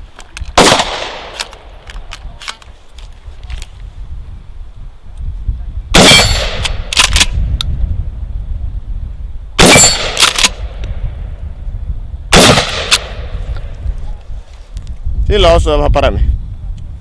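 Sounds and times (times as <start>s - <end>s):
shotgun shots: 0.6s - 1.8s, 6.0s - 7.4s, 9.6s - 10.8s, 12.3s - 13.4s.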